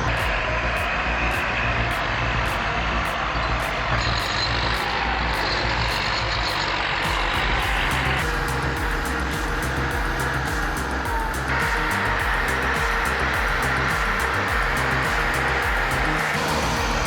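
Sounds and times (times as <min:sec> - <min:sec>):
heavy machine engine running: 0:00.0 - 0:17.0
high regular ticking: 0:00.0 - 0:17.0.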